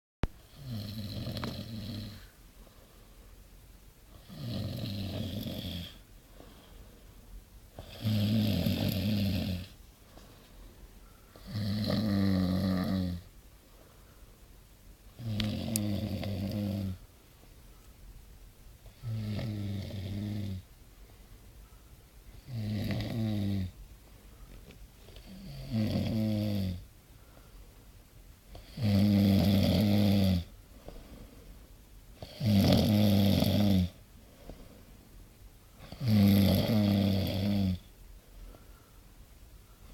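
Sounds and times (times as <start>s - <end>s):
man snoring loudly: 0.5s - 2.3s, 4.1s - 6.0s, 7.8s - 9.8s, 11.4s - 13.3s, 15.2s - 17.0s, 18.9s - 20.7s, 22.4s - 23.8s, 25.2s - 26.8s, 28.6s - 30.5s, 32.2s - 34.0s, 35.8s - 37.9s.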